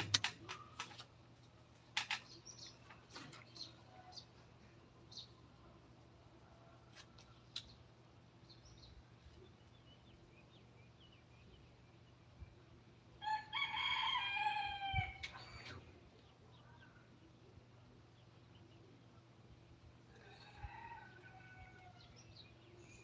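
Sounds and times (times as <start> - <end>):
rooster crowing: 13.2 - 15.2, 20.2 - 22.2.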